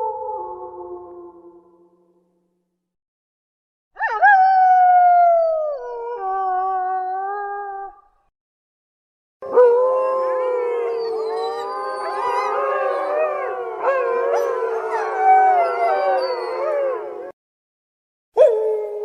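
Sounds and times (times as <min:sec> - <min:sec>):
wolves howling in chorus: 0:09.4 - 0:17.4.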